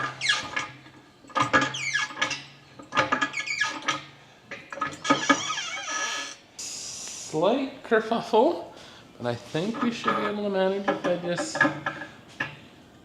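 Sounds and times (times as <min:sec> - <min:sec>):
engine hoist creaking and squeaking: 0:00.0 - 0:06.4.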